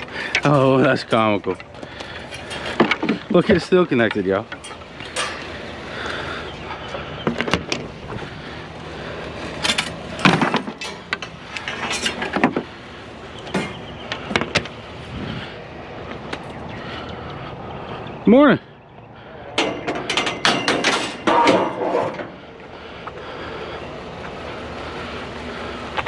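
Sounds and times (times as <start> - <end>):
scraping bursts: 0.0 - 18.0
knocks and rattles of handled items: 1.5 - 5.6, 7.2 - 7.9, 9.4 - 12.7, 19.6 - 22.4.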